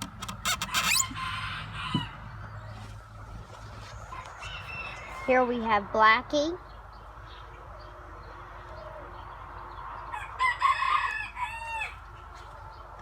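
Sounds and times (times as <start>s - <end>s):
rooster crowing: 0.7s - 2.3s, 4.1s - 5.6s, 10.0s - 12.0s.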